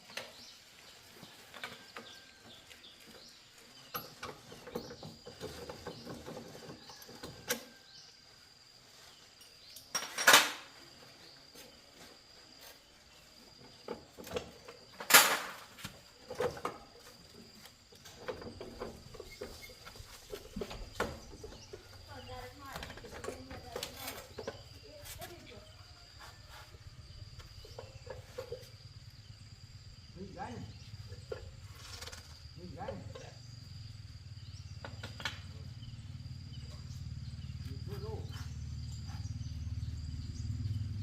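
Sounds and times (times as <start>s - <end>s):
metal tools clicking and knocking: 9.7s - 10.6s.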